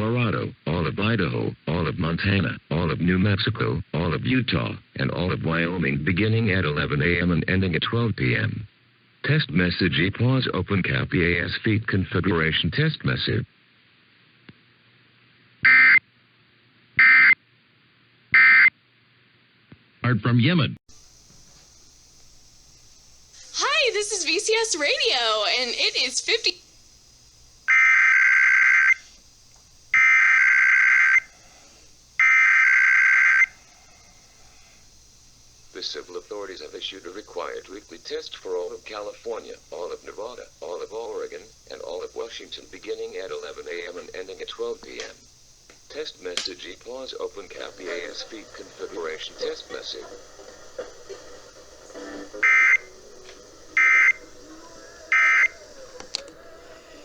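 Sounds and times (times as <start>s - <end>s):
warbling two-tone data bursts: 27.7s - 29.1s, 29.9s - 31.3s, 32.2s - 33.6s, 52.1s - 55.7s.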